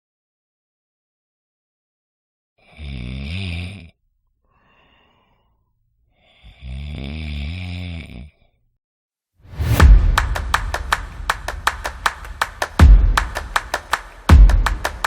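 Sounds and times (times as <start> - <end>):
person snoring: 2.6 - 4.0, 6.2 - 8.6
quiet breath: 4.4 - 7.0.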